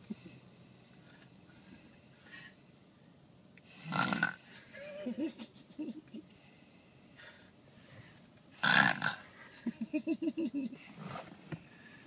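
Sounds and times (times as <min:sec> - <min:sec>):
person snoring loudly: 0:03.8 - 0:04.5, 0:08.6 - 0:09.4.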